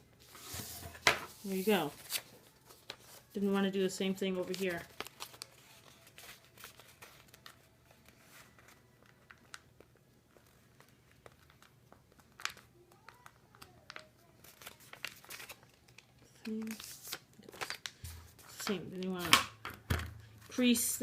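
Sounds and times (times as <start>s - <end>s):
paper rustling and crackling: 0.2s - 3.5s, 4.3s - 19.3s.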